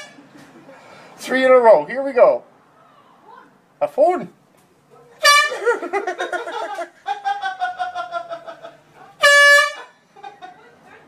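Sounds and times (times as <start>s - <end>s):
horn blasts: 5.2s - 5.8s, 9.2s - 9.9s.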